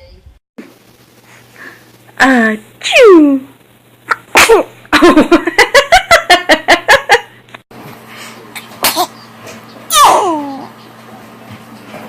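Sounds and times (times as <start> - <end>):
baby sneezing: 4.1 - 4.7, 8.6 - 9.2, 9.9 - 10.6
person laughing: 4.5 - 7.4.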